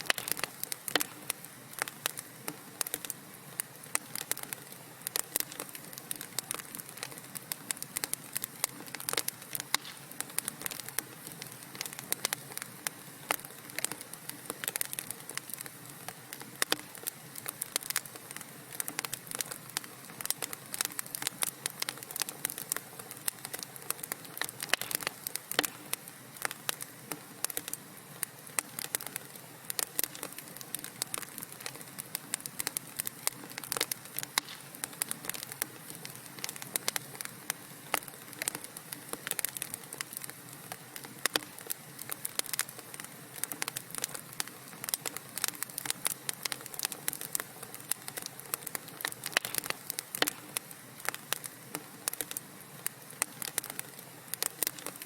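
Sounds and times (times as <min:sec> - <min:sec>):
wood fire crackling and popping: 0:00.0 - 0:55.0.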